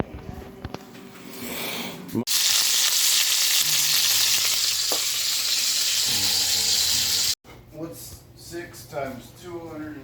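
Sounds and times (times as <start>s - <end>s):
loud sizzling hiss: 2.3s - 7.4s.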